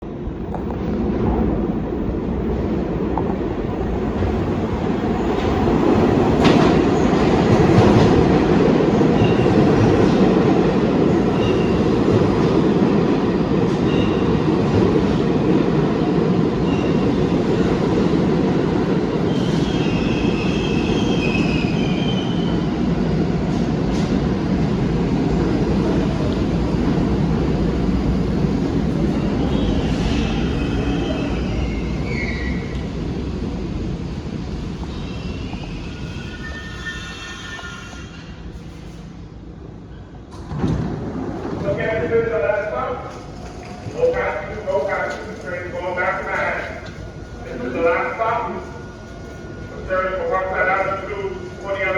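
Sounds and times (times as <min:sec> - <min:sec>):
subway train rumbling on rails: 0:00.0 - 0:51.9
high wheel squeals: 0:34.9 - 0:38.4.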